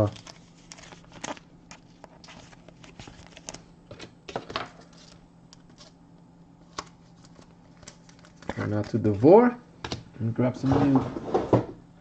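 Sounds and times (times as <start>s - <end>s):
cards clicking and rustling: 0.0s - 6.0s, 6.6s - 9.2s.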